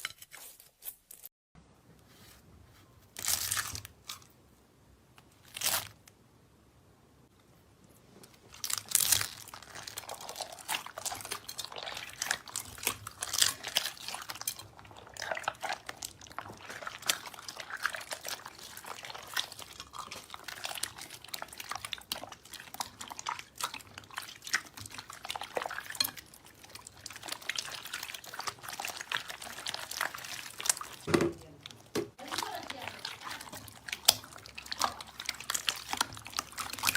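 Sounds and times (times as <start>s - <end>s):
slime squelching: 8.0s - 36.9s.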